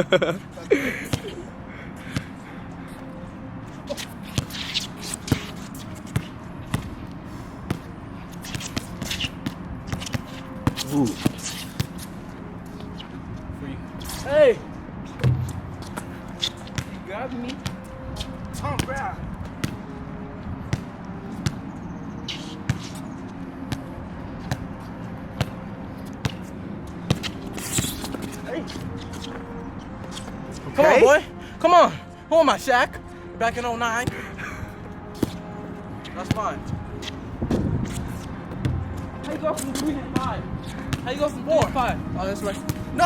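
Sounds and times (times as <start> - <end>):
basketball bouncing: 15.2 - 16.1, 16.7 - 17.0, 38.5 - 39.0
basketball bouncing on hard court: 38.6 - 38.9.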